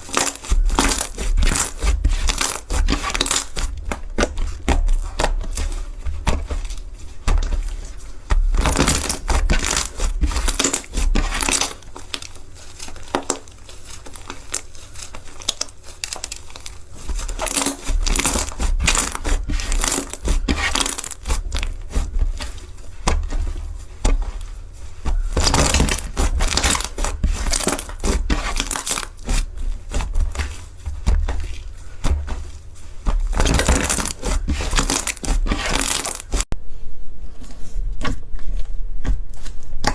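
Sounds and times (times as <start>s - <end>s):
slime squeezed by hand crackling: 8.6s - 22.5s, 24.2s - 36.5s.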